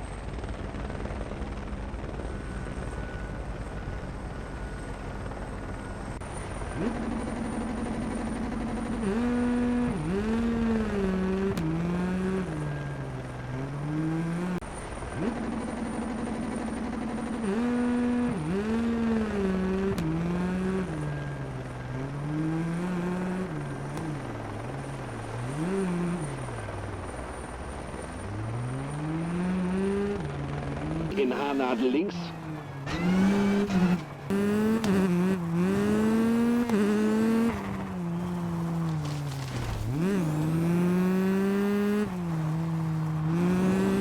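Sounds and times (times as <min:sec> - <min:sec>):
rc car motor revving: 0:32.7 - 0:38.4.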